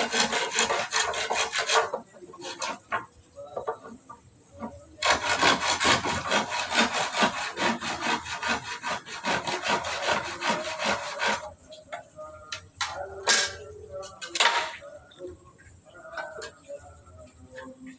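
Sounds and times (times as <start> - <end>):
hand saw cutting wood: 0.0 - 2.8, 5.0 - 11.5.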